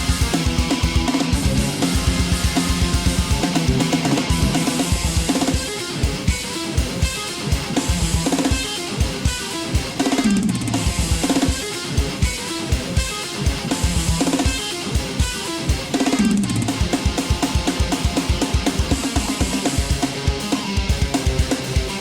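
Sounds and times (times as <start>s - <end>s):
electric guitar notes: 0.0s - 9.9s
drum kit with kick drum: 0.0s - 22.0s.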